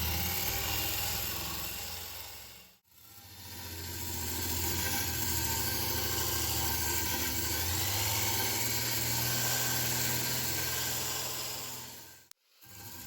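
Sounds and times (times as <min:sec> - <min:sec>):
power tool grinding: 0:00.0 - 0:13.0.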